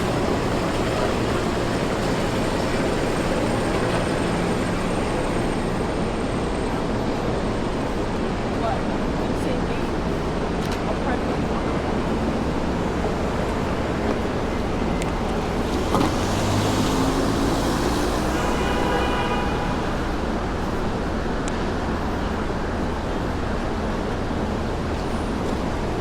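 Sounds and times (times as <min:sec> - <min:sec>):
high whine from vehicle: 0:00.0 - 0:26.0
vehicle passing close by: 0:15.4 - 0:18.9.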